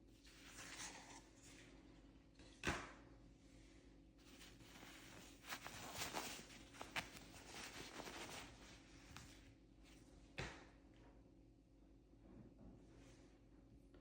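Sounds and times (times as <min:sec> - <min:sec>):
packaging rustling: 0:04.2 - 0:09.4.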